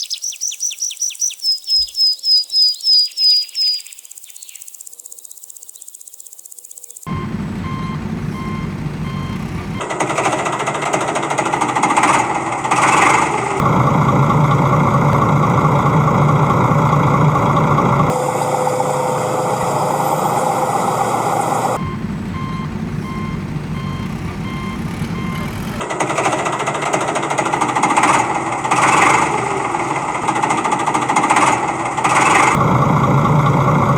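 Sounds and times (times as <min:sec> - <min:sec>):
reversing alarm beep: 0:07.1 - 0:09.9, 0:18.1 - 0:25.8
heavy machinery rattling: 0:07.1 - 0:33.9.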